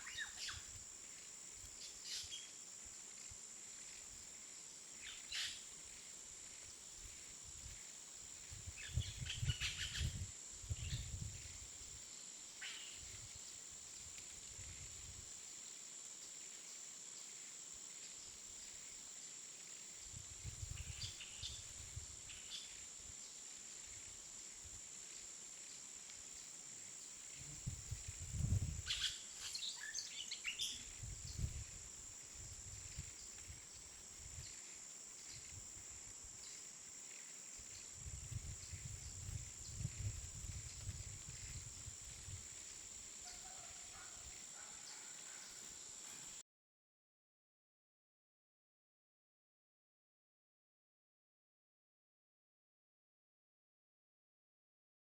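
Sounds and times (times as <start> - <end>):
bird chirps: 0.0 - 0.6, 28.9 - 30.9.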